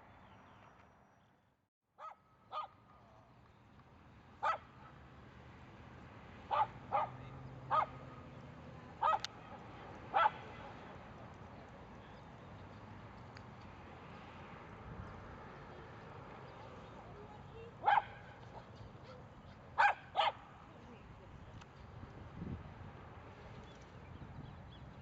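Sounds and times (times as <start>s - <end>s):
dog barking: 2.0s - 2.8s, 4.4s - 4.9s, 6.5s - 8.1s, 9.0s - 9.3s, 10.1s - 10.4s, 17.8s - 19.2s, 19.8s - 20.5s.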